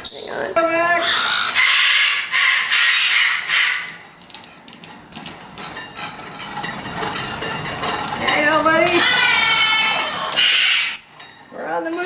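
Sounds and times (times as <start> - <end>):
parrot squawking: 0.0 - 4.0, 8.9 - 11.6.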